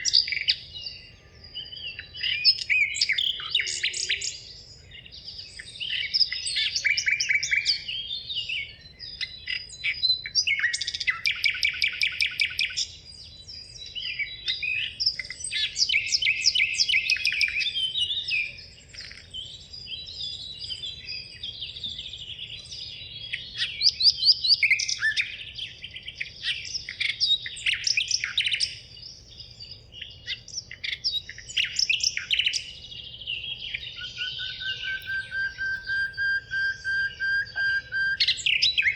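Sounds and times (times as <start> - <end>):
songbirds singing: 0.0 - 38.9.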